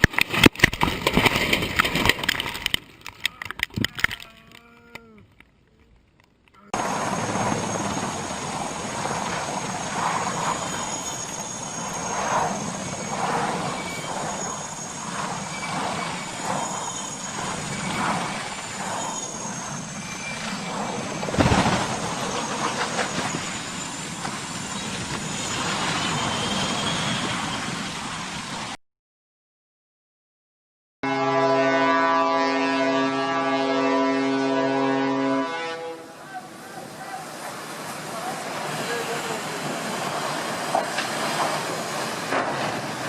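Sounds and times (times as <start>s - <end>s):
vehicle noise with surges: 6.8s - 28.7s, 36.0s - 43.0s.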